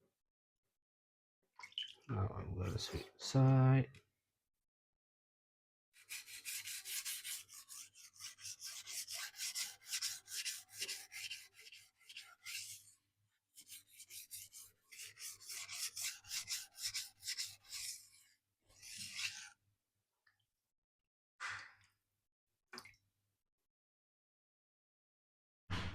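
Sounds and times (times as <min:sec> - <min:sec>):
knife scraping on sharpening stone: 0:06.0 - 0:13.0, 0:13.6 - 0:19.6.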